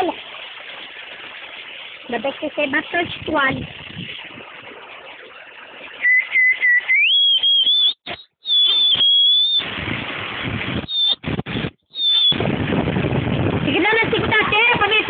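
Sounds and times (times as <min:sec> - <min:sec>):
heavy rain: 0:00.0 - 0:00.5, 0:01.3 - 0:05.1, 0:08.8 - 0:15.0
wind whistling: 0:02.9 - 0:05.0, 0:05.8 - 0:15.0.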